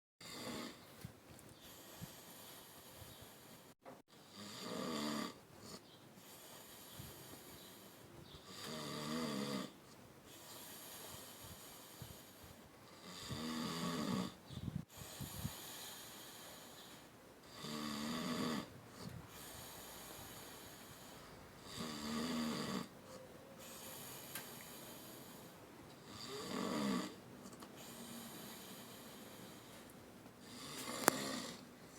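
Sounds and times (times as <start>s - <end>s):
quiet breathing: 0.7s - 4.3s, 5.6s - 8.8s, 9.7s - 13.6s, 14.3s - 17.8s, 18.6s - 31.9s
person snoring: 8.4s - 9.8s, 13.0s - 14.4s, 17.5s - 22.9s, 26.0s - 29.6s, 30.4s - 31.6s.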